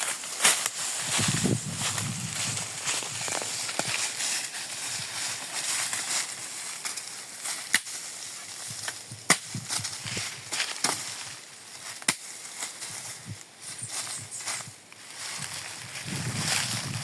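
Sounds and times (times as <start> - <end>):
steady outdoor hiss: 0.0 - 17.0
dry wood snapping: 5.9 - 8.1, 8.8 - 12.5.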